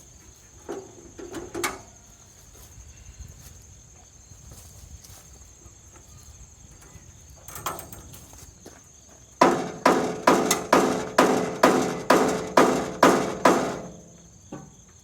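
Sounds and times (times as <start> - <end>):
hammer striking steel: 9.4 - 14.2.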